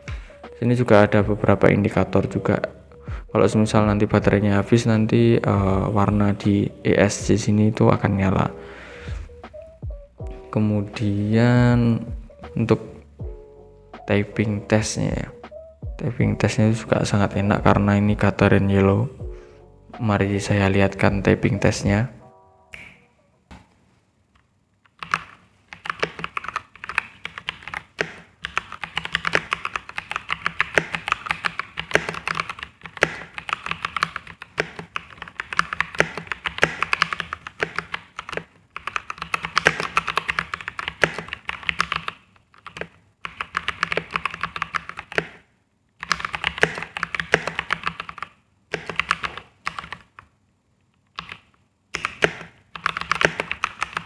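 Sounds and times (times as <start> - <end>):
mechanical keyboard key clacking: 52.0 - 54.0.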